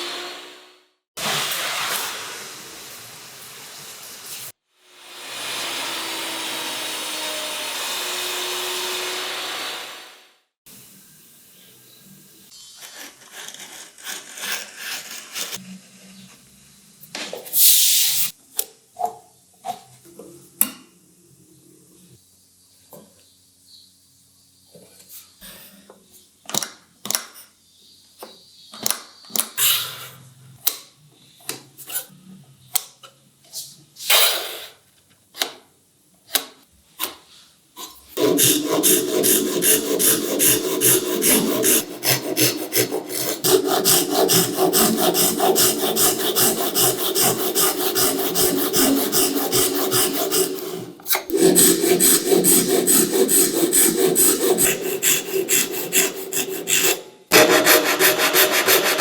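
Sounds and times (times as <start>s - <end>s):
hand sawing wood strokes: 38.2s - 59.0s.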